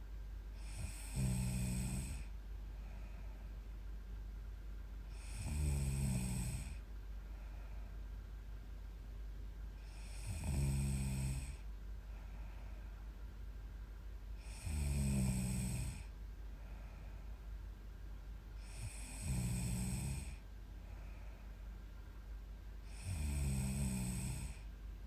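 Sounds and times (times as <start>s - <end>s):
quiet breathing: 0.0s - 25.0s
woman snoring: 0.6s - 2.3s, 5.1s - 6.8s, 9.8s - 11.7s, 14.4s - 16.1s, 18.6s - 20.4s, 22.8s - 24.7s.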